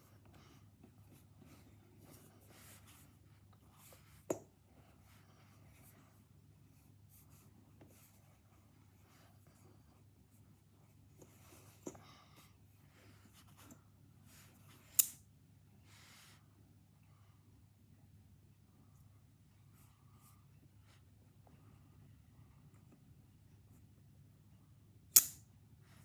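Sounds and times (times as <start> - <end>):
sharp click: 25.2 - 25.4.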